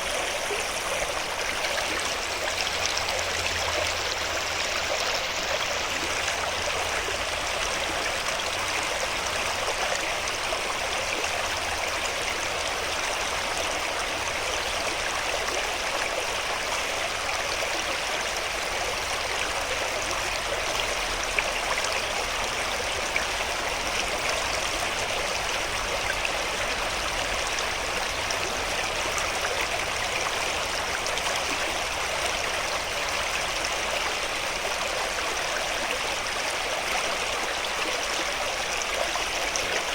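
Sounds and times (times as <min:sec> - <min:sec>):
stream rushing: 0:00.0 - 0:39.9.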